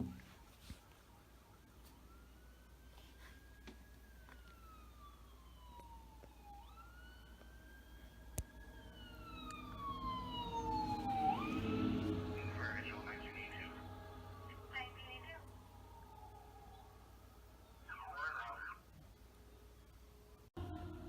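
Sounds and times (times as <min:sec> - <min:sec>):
fire engine siren wailing: 0:00.2 - 0:18.8
truck engine: 0:09.2 - 0:14.8, 0:20.6 - 0:21.0.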